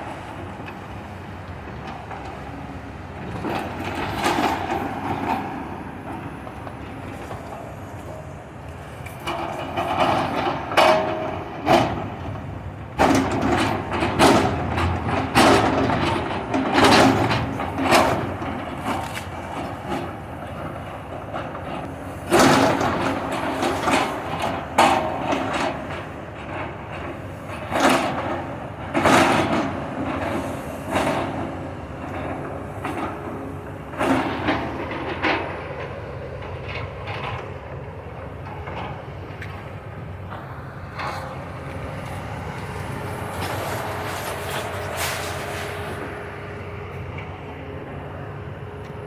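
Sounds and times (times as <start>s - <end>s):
debris crashing and scraping: 42.5s - 46.6s.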